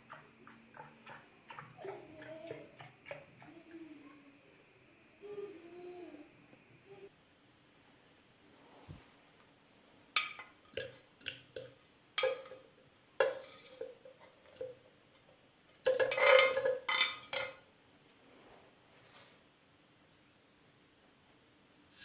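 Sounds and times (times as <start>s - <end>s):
dishes and cutlery clinking: 11.6s - 14.8s, 15.8s - 17.6s.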